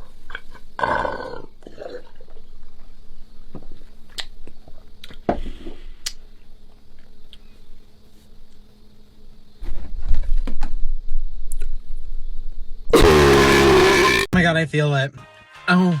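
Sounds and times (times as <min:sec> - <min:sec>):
breathy throat sound: 0:13.0 - 0:14.3.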